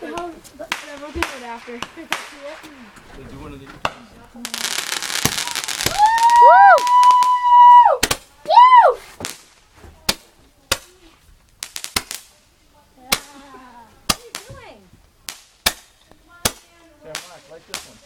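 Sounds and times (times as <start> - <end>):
roman candles popping: 3.8 - 12.4, 14.0 - 18.0.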